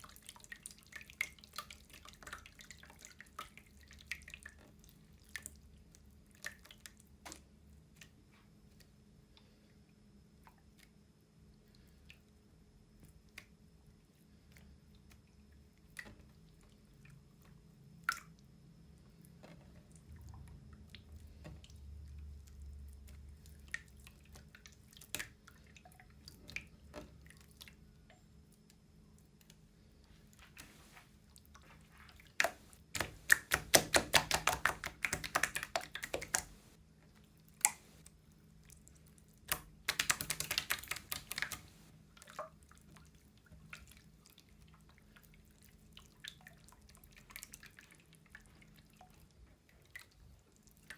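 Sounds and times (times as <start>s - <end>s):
rapid crackling pops of slime: 32.4s - 36.8s, 39.4s - 41.9s.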